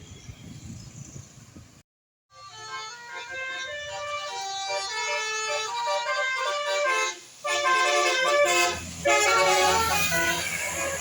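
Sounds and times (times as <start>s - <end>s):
bus trumpet horns playing tune: 2.3s - 11.0s
bus engine running: 2.4s - 11.0s.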